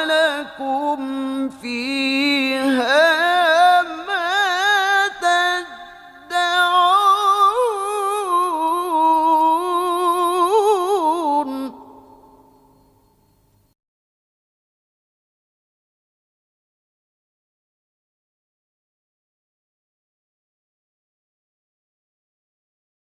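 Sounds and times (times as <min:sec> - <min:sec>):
person chanting recitation: 0:00.0 - 0:12.2.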